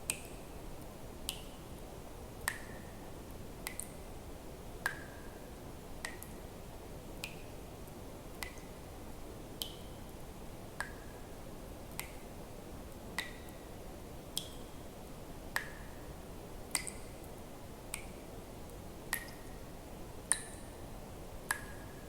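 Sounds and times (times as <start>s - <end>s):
low steady hiss: 0.0s - 22.0s.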